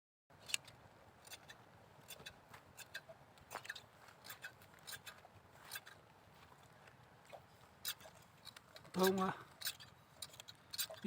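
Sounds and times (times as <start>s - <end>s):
shears snipping wool: 7.9s - 11.0s.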